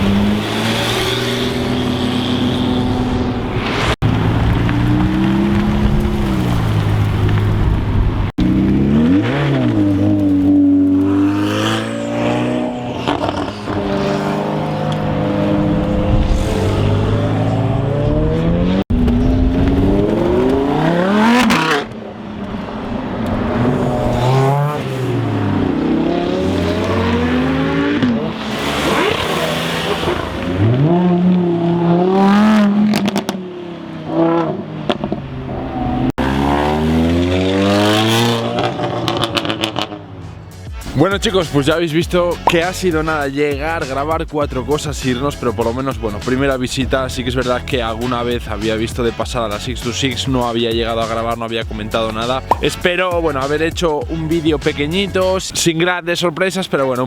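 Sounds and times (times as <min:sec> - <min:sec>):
sports car engines revving past: 0:00.0 - 0:40.6.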